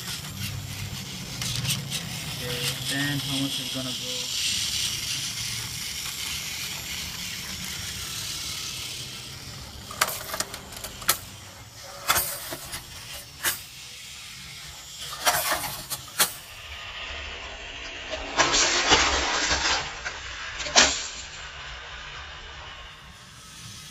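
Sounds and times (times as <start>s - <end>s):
toy train motor whir: 0.0s - 23.9s
plastic clicks and clacks: 9.9s - 11.3s.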